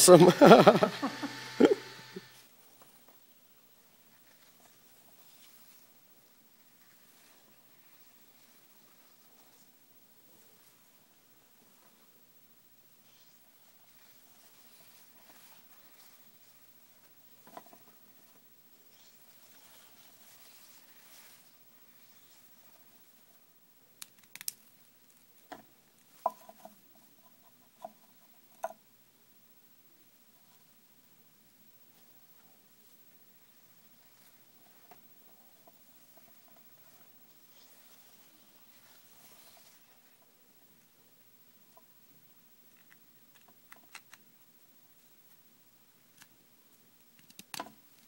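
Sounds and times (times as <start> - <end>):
small hard objects clicking: 23.9 - 25.3, 47.0 - 47.8
faint clicks and taps: 46.2 - 48.0.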